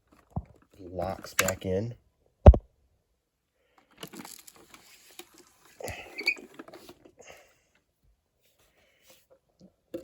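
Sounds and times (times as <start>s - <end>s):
plastic vacuum parts clicking: 0.1s - 1.7s.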